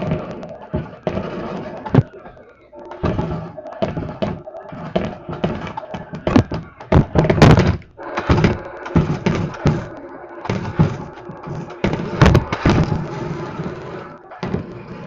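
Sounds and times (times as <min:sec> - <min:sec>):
hard objects knocking and thudding: 0:00.0 - 0:15.0.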